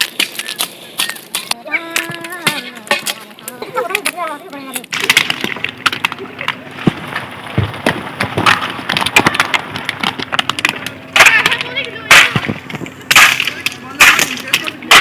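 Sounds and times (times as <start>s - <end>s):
shaken branches crashing: 4.9s - 15.0s.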